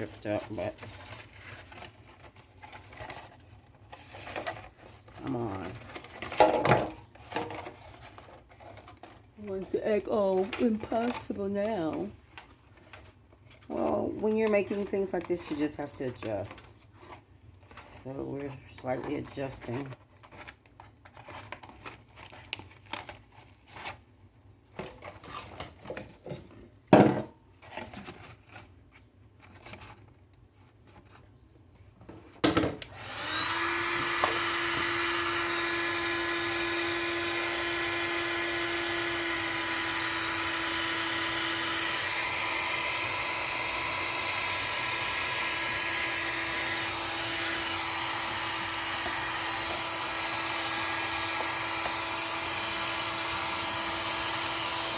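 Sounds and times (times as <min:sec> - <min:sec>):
heat gun blowing air: 0:32.9 - 0:54.9.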